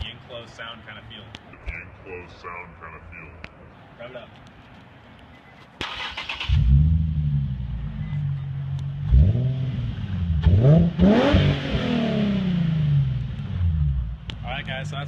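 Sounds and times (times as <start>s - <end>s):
car engine revving: 5.8s - 15.0s
car engine starting: 5.8s - 15.0s.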